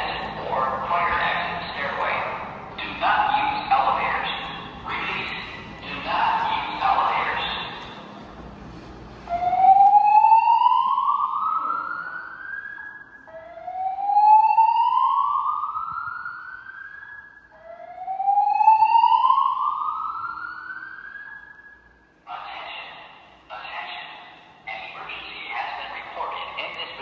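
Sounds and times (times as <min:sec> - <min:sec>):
slow-whoop alarm tone: 0:09.3 - 0:21.9.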